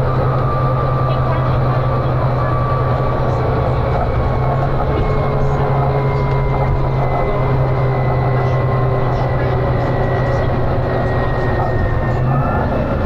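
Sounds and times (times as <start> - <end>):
bus diesel engine droning: 0.0 - 13.0.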